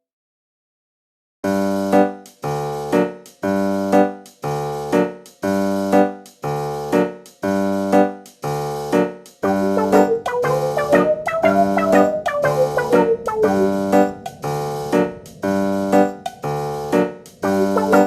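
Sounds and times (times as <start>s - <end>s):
keyboard chords: 9.0s - 18.0s
run of single keyboard notes: 9.5s - 15.4s.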